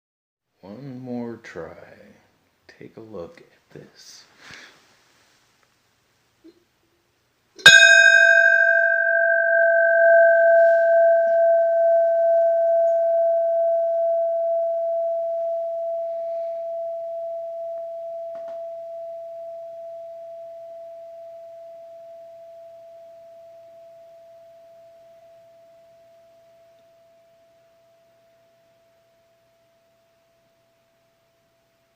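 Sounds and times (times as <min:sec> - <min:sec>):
bell struck and ringing: 0:07.6 - 0:28.0.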